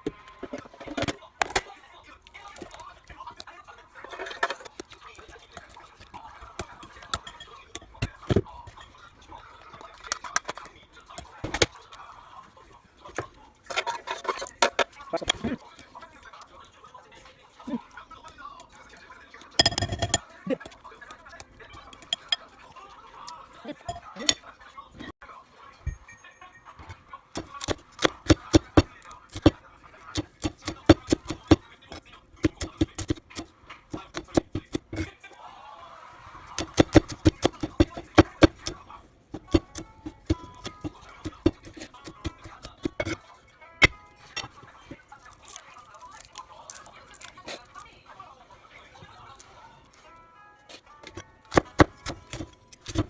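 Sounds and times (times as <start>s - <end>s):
faint background voice: 0.3s - 19.6s
kitchen utensils and dishes clicking: 2.6s - 11.8s, 13.1s - 16.1s, 18.5s - 25.1s, 25.8s - 35.1s, 36.5s - 38.8s, 39.4s - 45.0s, 51.0s - 53.0s
knife chopping on cutting board: 27.4s - 29.6s, 30.2s - 31.6s, 32.4s - 35.1s, 36.5s - 38.8s, 39.4s - 43.2s, 51.5s - 53.0s.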